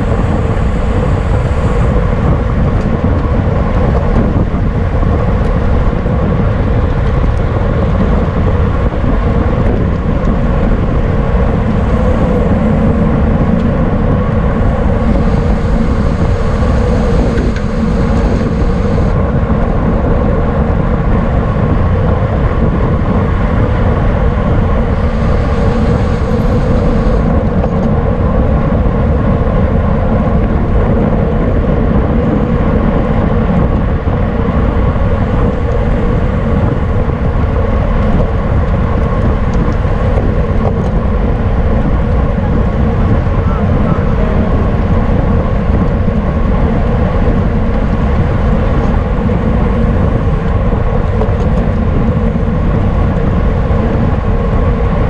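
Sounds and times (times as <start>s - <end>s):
wind buffeting microphone: 0.0s - 55.0s
high hiss: 24.8s - 27.3s.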